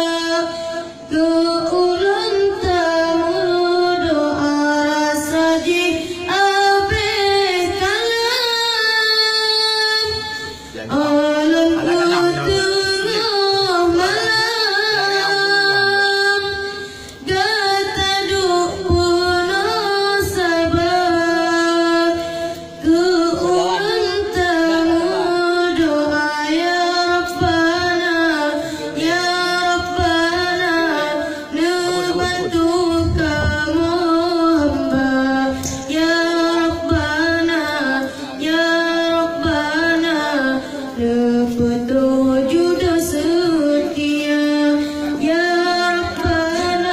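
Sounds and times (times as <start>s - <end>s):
high voice singing: 10.0s - 37.8s
singer breathing: 10.4s - 10.9s, 16.7s - 17.2s, 28.6s - 29.0s.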